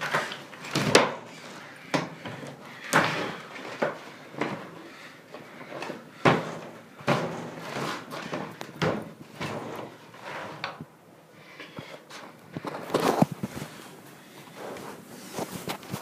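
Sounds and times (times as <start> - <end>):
rustling and handling noise: 0.0 - 11.0, 11.6 - 16.0
sharp knocks and bumps: 6.2 - 9.9.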